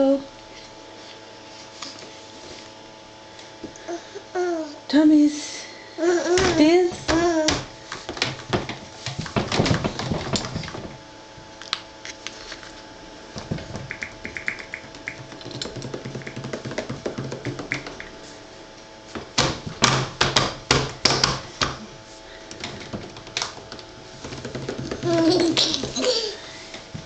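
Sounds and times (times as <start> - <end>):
taps and knocks: 13.4 - 18.2, 19.2 - 21.8, 22.6 - 26.0.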